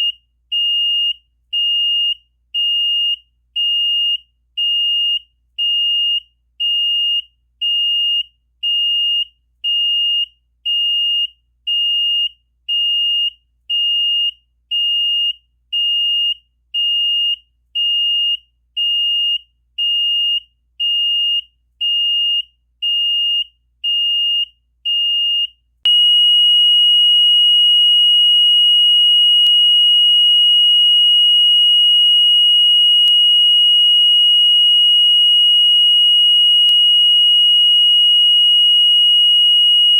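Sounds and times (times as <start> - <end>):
alarm panel buzzer beeping: 25.9 - 39.9.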